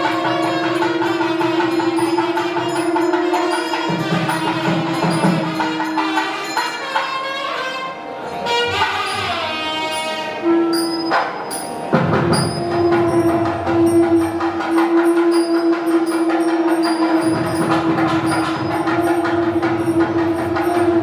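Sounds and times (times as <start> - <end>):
long held note: 0.0 - 6.7
steady percussion beat: 0.0 - 7.5, 8.4 - 21.0
ringing bell-like strikes: 0.0 - 7.6, 9.1 - 21.0.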